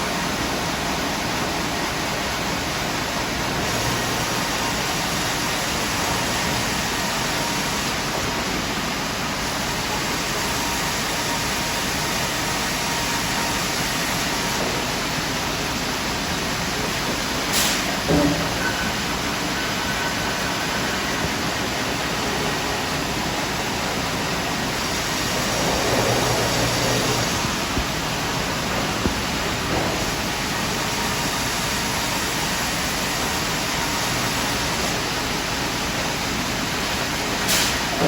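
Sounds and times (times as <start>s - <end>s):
band sawmill running: 0.0s - 38.0s.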